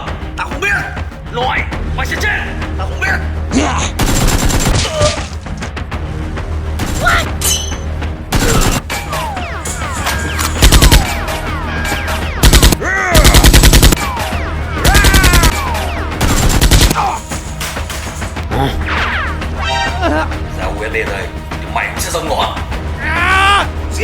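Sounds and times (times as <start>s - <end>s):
background music: 0.0s - 24.0s
machine-gun fire: 4.0s - 4.8s, 10.4s - 11.5s, 12.1s - 17.0s.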